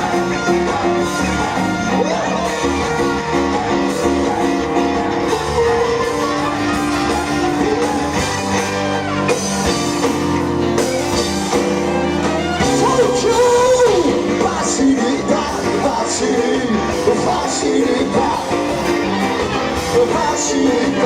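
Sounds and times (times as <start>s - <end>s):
rock band playing live: 0.0s - 21.0s
person singing: 12.6s - 19.0s, 19.7s - 21.0s.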